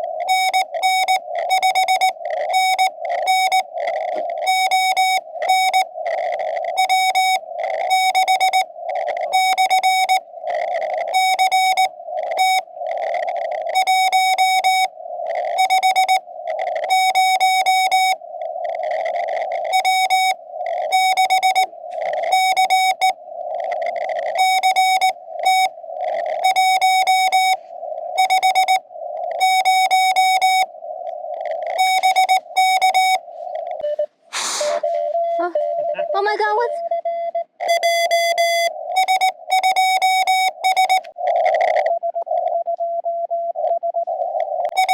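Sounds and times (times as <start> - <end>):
morse code tone: 0.3 - 3.7, 19.8 - 23.2, 28.2 - 28.8, 31.7 - 41.8, 44.3 - 44.9
radio hiss: 28.9 - 36.8.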